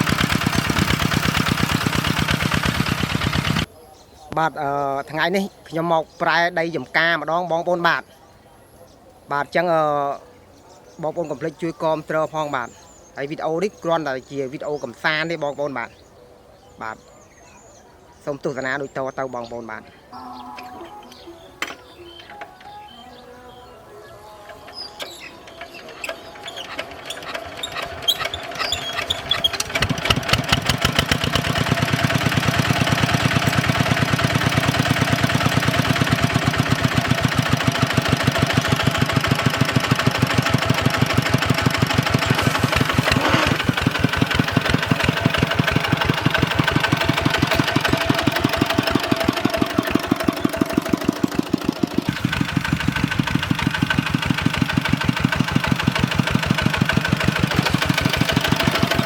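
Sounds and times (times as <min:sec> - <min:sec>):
diesel tractor engine chugging: 0:00.0 - 0:03.7, 0:24.5 - 0:59.0.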